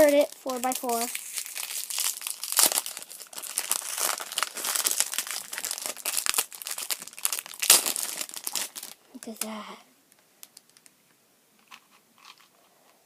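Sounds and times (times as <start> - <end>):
plastic packaging crinkling: 0.0 - 9.5.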